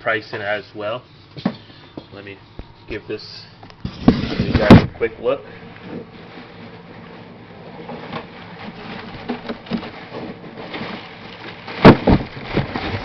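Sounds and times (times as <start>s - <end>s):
loud knocks: 3.9s - 5.0s, 11.8s - 13.0s.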